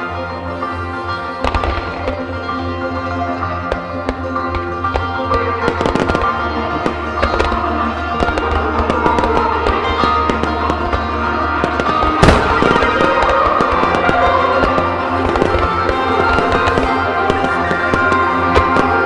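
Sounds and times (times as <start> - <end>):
music: 0.0 - 19.0
fireworks bursting: 0.5 - 19.0
loud firework bang: 11.8 - 17.0.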